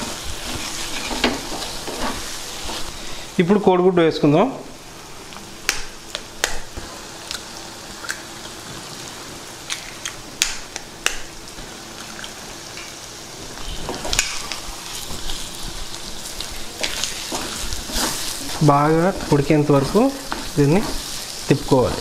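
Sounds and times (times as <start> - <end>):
stirring in a pan: 0.0 - 3.3, 13.6 - 22.0
prawns sizzling in a pan: 0.0 - 3.5, 4.8 - 22.0.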